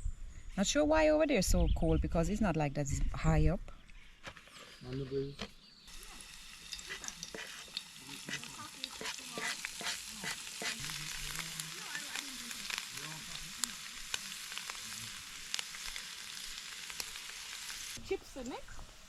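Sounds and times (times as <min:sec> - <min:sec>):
fritters frying in oil: 0:05.9 - 0:19.0.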